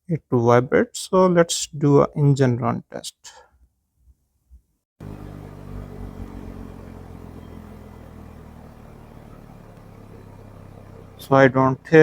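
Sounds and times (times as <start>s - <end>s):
car engine starting and running: 5.0s - 12.0s.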